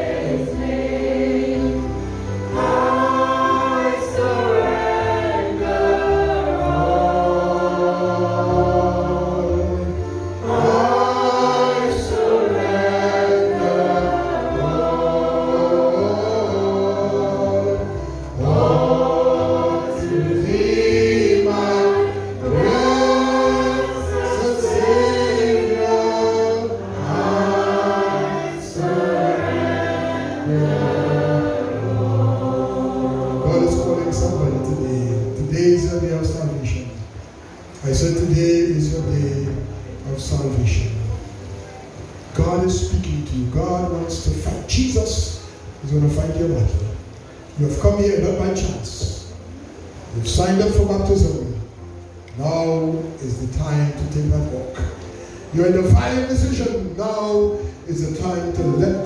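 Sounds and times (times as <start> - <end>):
sustained low accompaniment: 0.0 - 37.2
choir singing a gospel hymn: 0.0 - 59.0.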